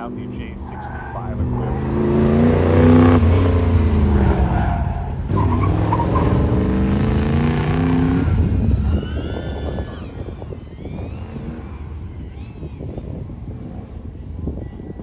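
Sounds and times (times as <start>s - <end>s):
car engine pulling under load: 0.0s - 14.3s
tyre squeal: 4.0s - 6.7s, 7.5s - 12.8s.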